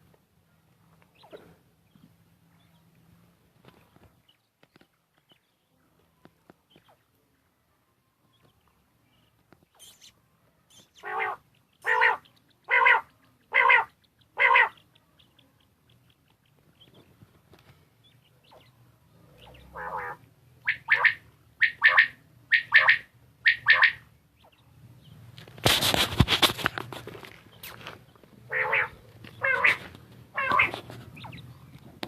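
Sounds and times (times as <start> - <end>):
quail calling: 10.7 - 15.5, 19.4 - 24.6, 28.5 - 31.6.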